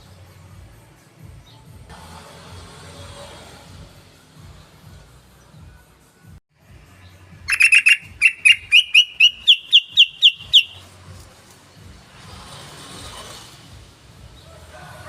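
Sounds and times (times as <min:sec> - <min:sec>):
bird chattering call: 0:07.5 - 0:10.8.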